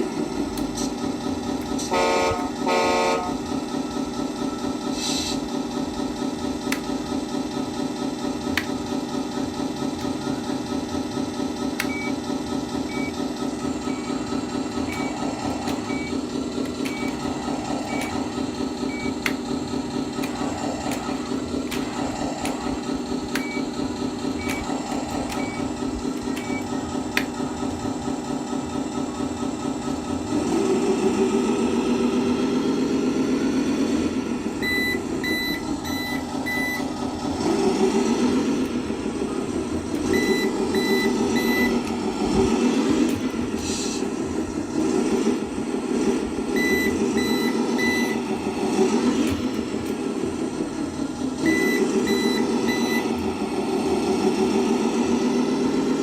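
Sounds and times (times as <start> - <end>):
truck engine idling: 0.0 - 56.0
horn blasts: 1.8 - 3.5.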